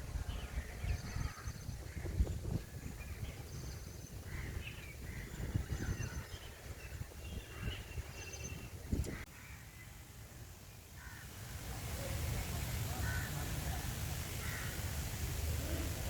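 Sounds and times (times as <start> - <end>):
birds chirping and calling: 0.3 - 9.3.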